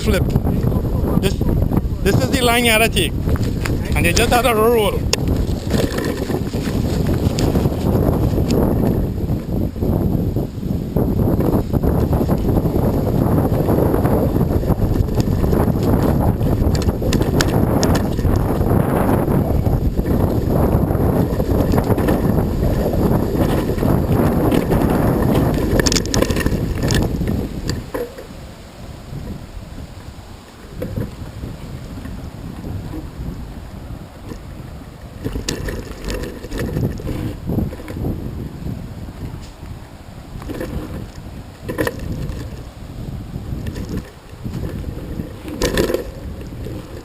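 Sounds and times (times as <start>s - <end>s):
wind buffeting microphone: 0.0s - 47.0s
bicycle clicks and rattles: 5.1s - 9.0s, 14.7s - 18.7s, 20.0s - 28.3s, 35.2s - 38.1s, 40.4s - 42.6s, 43.6s - 47.0s.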